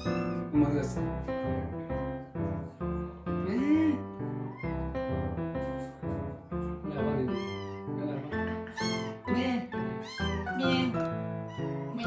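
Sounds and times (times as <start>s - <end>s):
cat meowing: 0.0s - 0.5s, 3.6s - 4.8s, 7.2s - 12.0s
background music with held notes: 0.0s - 12.0s.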